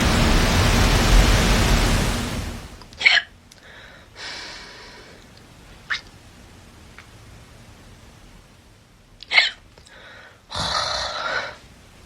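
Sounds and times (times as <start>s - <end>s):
loud steady hiss: 0.0s - 9.1s
person hiccuping: 3.0s - 3.3s, 9.2s - 9.6s.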